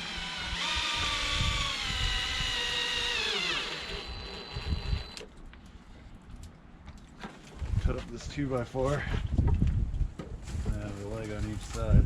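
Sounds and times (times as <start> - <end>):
cordless drill driving screw: 0.0 - 5.3.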